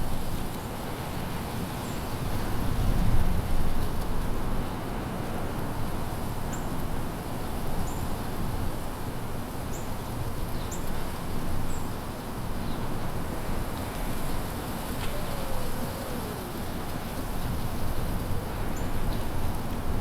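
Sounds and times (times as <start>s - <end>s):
small bird calling: 14.8s - 19.1s.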